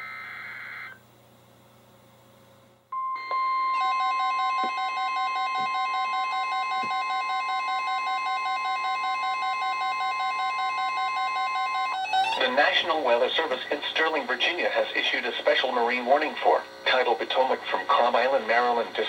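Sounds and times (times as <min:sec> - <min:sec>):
steady warning tone: 0:00.0 - 0:01.0, 0:03.0 - 0:19.0
pulsing alarm beeps: 0:03.0 - 0:12.4.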